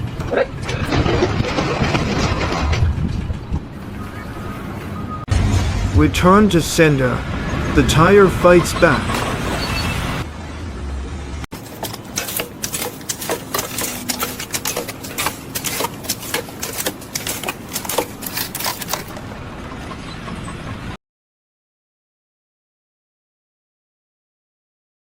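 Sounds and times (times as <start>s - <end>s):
rapid clattering and clicking: 11.5s - 19.3s.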